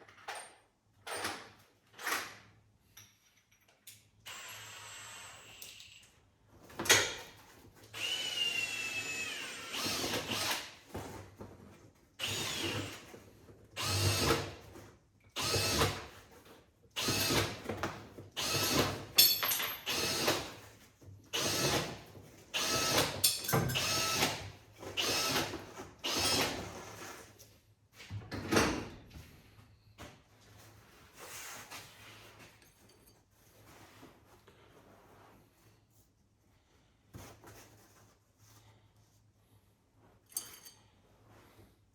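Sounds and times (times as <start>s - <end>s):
power tool whirring in bursts: 8.0s - 10.8s, 13.8s - 14.6s, 17.0s - 17.6s, 19.9s - 20.6s, 21.4s - 22.0s, 22.6s - 23.2s, 23.8s - 26.8s.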